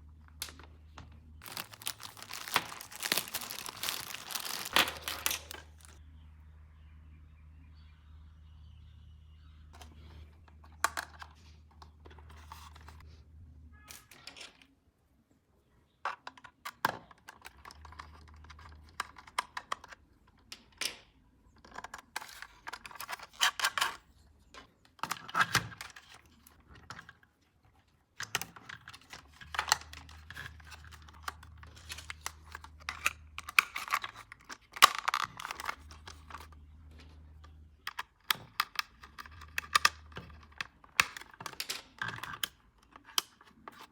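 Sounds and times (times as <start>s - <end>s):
packaging crinkling and tearing: 1.4s - 6.0s
plastic toy parts clicking: 28.2s - 36.5s, 37.8s - 43.9s.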